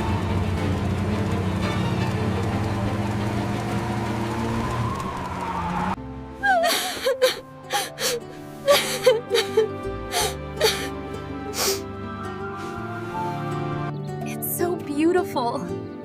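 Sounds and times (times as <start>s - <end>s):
noisy rush with rising tone: 0.0s - 6.0s
background music: 0.0s - 16.0s
person gasping and whimpering: 6.4s - 11.9s.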